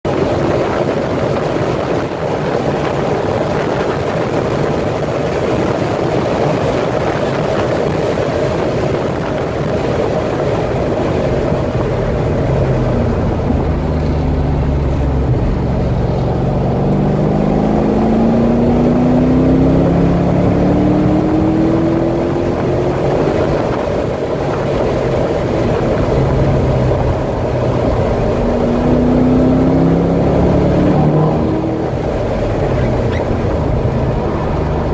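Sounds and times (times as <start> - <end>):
wind and road noise: 0.0 - 34.9
car engine accelerating: 7.4 - 34.9.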